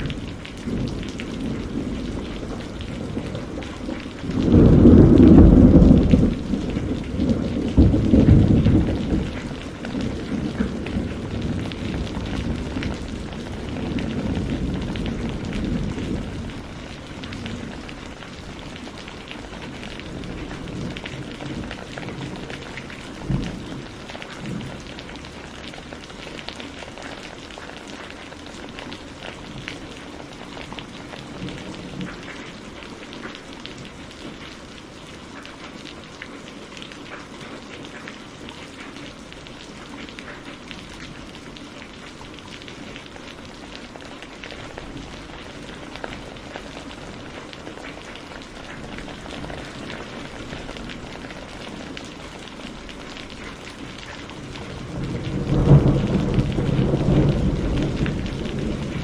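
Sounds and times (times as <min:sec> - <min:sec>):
thunderclap: 0:00.0 - 0:18.5, 0:54.5 - 0:59.0
low thunder rumble: 0:00.0 - 0:25.3, 0:53.8 - 0:59.0
raindrops ticking on a surface: 0:00.0 - 0:59.0
steady rain: 0:00.0 - 0:59.0.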